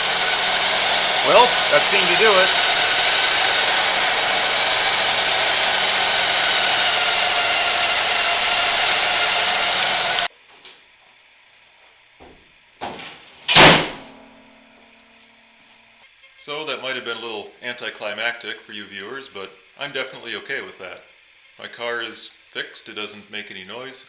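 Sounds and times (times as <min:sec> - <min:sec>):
car engine idling: 0:00.0 - 0:10.3
loud thump: 0:13.6 - 0:14.1.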